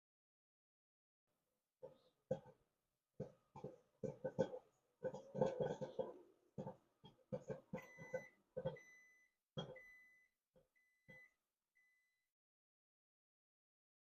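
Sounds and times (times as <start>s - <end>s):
popcorn popping: 3.2s - 8.8s
microwave beeping: 7.8s - 12.2s.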